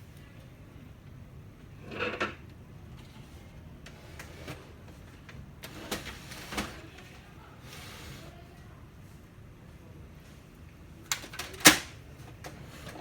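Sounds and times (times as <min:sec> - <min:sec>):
printer parts rattling and clicking: 0:05.2 - 0:07.2, 0:11.1 - 0:13.0.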